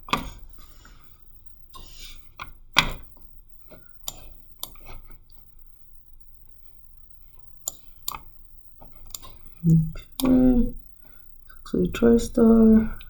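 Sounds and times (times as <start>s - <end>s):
mouse and keyboard clicks: 1.8s - 5.2s, 7.6s - 10.4s.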